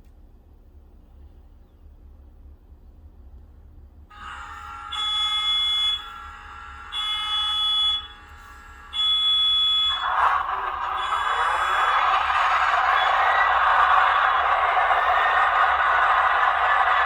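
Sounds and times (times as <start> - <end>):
diesel locomotive horn: 4.1 - 16.7.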